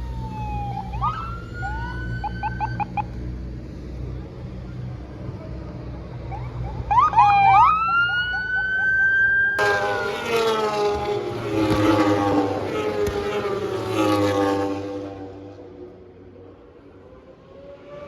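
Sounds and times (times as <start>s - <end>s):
motorcycles passing by: 0.0s - 18.0s
motorcycle shifting up gears: 9.6s - 14.7s.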